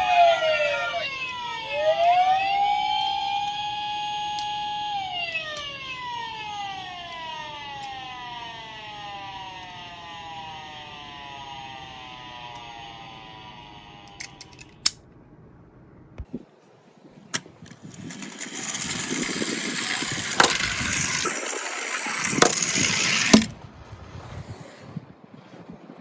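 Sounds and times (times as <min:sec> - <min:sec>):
police car siren: 0:00.0 - 0:14.6, 0:17.8 - 0:23.5
sharp clicks: 0:03.0 - 0:15.0.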